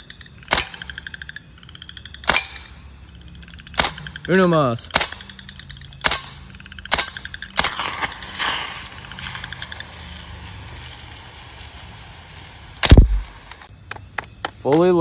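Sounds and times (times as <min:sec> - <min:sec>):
gas hissing from a can: 0:07.6 - 0:13.7
bb gun shot: 0:12.7 - 0:13.7
heavy thump: 0:12.9 - 0:13.6.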